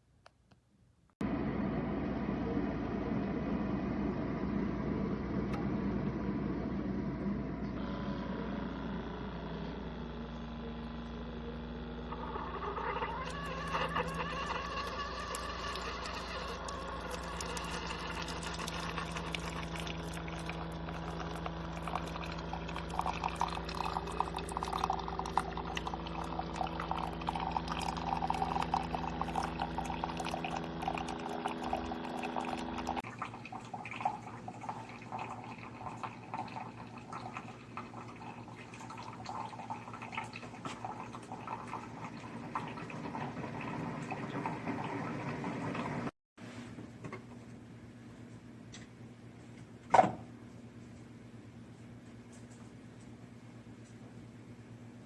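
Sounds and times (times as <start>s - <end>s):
coffee machine hum: 1.2s - 47.4s
liquid streaming into a cup: 7.8s - 46.1s.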